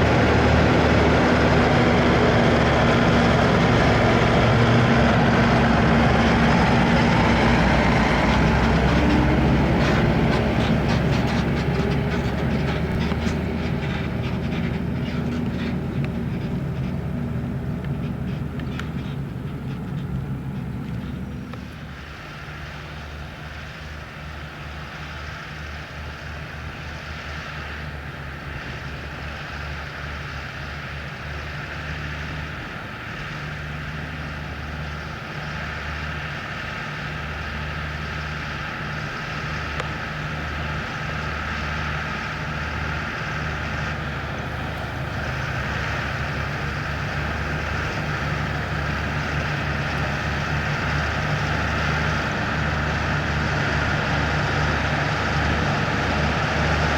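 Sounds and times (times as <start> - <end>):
tractor engine hum: 0.0 - 56.9
harvesting machinery rattle: 6.4 - 21.5, 34.6 - 56.9.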